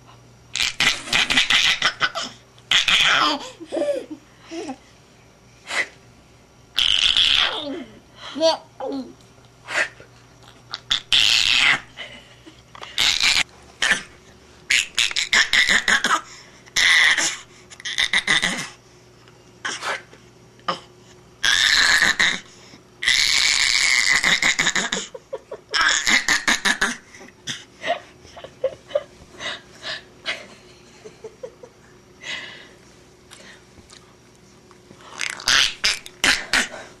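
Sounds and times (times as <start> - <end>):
baby laughing and squealing: 0.6 - 4.0, 10.7 - 11.9, 25.7 - 27.0.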